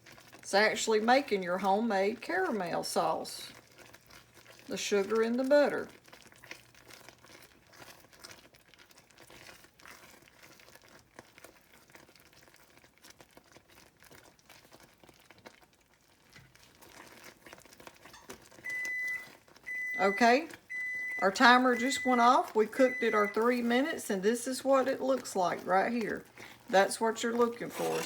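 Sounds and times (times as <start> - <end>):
caramel boiling and crackling: 0.0 - 28.0
kitchen timer beeping: 18.1 - 24.0, 27.7 - 28.0.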